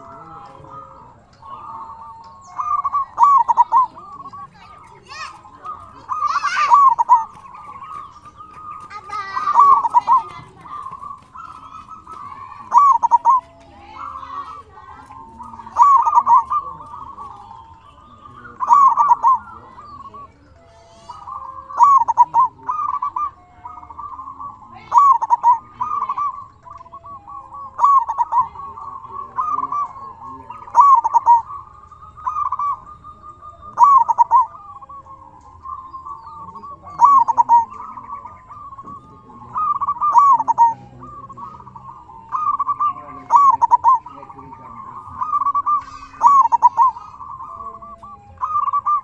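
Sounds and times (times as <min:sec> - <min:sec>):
dove cooing phrases: 0:00.0 - 0:49.0
soft cooing in background: 0:00.0 - 0:49.0.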